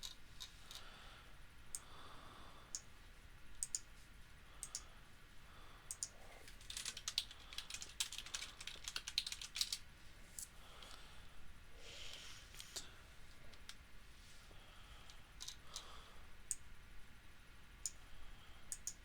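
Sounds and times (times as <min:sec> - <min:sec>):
keyboard keys clicking: 0:05.9 - 0:09.8.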